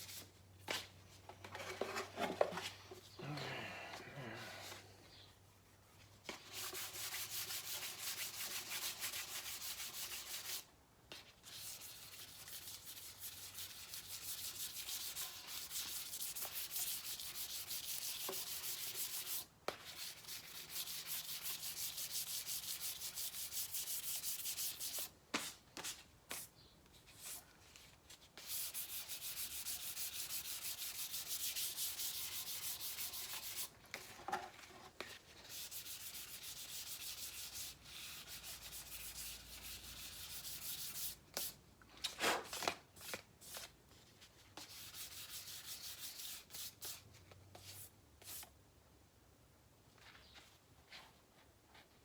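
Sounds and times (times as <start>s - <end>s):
sandpaper rubbing by hand: 11.5s - 25.1s, 28.4s - 33.7s, 35.4s - 41.5s, 44.6s - 47.0s.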